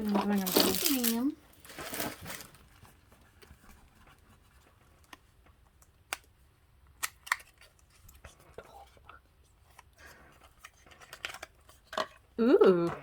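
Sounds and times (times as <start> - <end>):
packaging rustling: 0.0 - 4.2.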